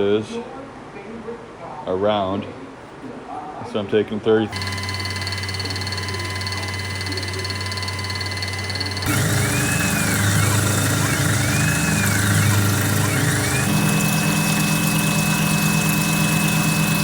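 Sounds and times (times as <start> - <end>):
machine tool machining metal: 4.5 - 17.0
rising and falling whine: 4.6 - 17.0.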